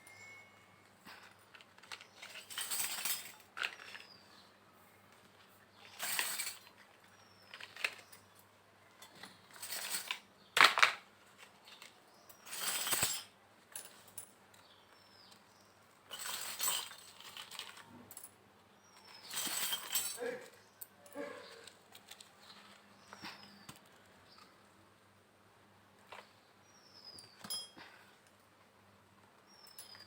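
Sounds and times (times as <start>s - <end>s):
toy pieces clinking and rustling: 1.6s - 4.2s.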